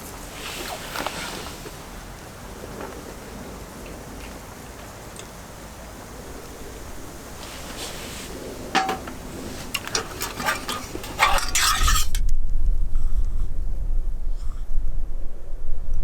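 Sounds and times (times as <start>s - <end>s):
steady hiss: 0.0s - 12.2s
dishes and utensils clinking: 8.8s - 12.2s.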